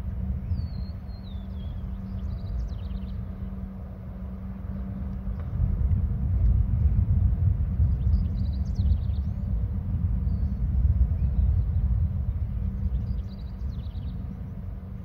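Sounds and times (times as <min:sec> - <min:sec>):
steady low hum: 0:00.0 - 0:15.0
wind buffeting microphone: 0:00.0 - 0:15.0.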